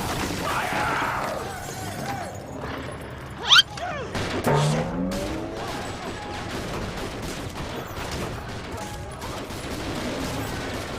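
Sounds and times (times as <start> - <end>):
rapid gunfire: 5.1 - 10.9.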